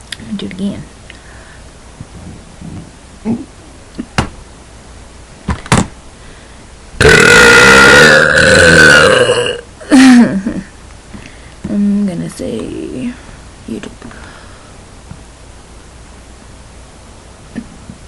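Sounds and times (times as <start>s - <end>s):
person burping loudly: 7.0s - 9.7s.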